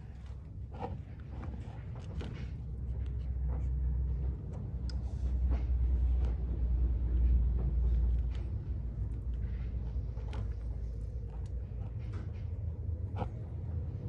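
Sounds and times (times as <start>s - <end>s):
low uneven rumble: 0.0s - 14.0s
light clicks and taps: 0.1s - 13.3s.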